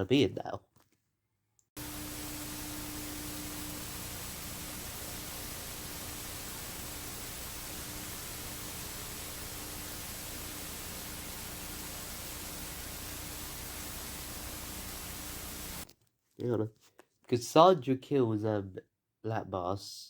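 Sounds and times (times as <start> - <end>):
static hiss: 1.8 - 15.8.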